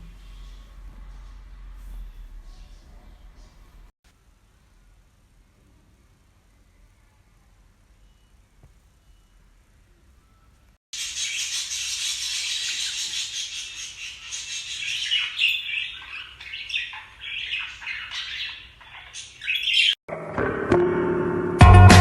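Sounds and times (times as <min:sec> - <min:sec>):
budgerigars chattering and squawking: 0:11.0 - 0:20.0.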